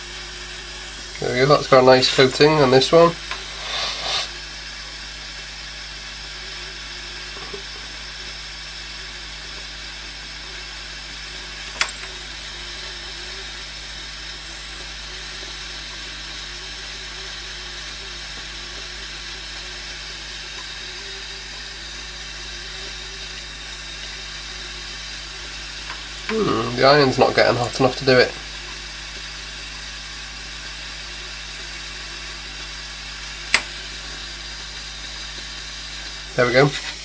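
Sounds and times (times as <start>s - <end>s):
steady hiss: 0.0s - 4.9s, 14.4s - 37.0s.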